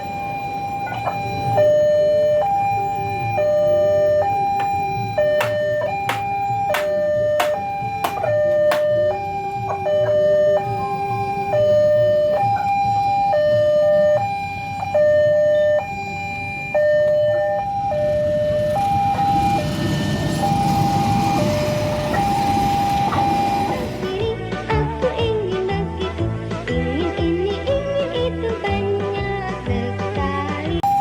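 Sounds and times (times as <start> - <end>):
level crossing two-tone alarm: 0.0 - 24.2
low rumbling noise: 15.8 - 24.4.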